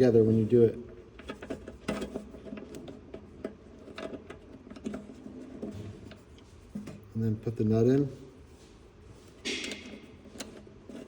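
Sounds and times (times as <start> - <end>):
latch parts clicking and tapping: 9.4 - 10.6.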